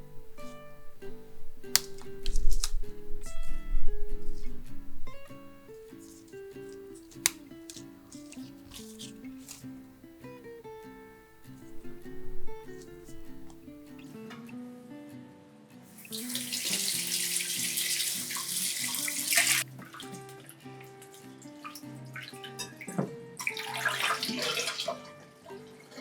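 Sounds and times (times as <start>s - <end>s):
soft music with plucked notes: 0.0s - 26.0s
tap water running into sink: 16.0s - 25.0s.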